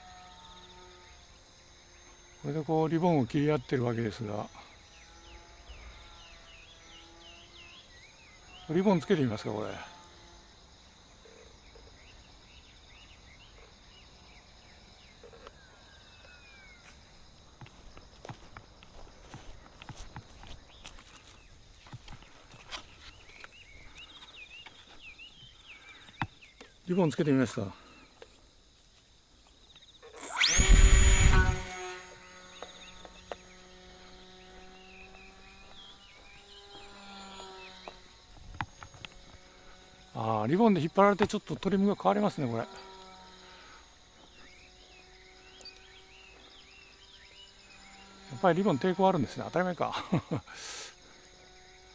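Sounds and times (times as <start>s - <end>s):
electric motor propeller whine: 0.0s - 14.4s, 30.0s - 40.2s, 41.8s - 51.9s
birds chirping: 0.0s - 51.9s
high insect drone: 0.0s - 51.9s.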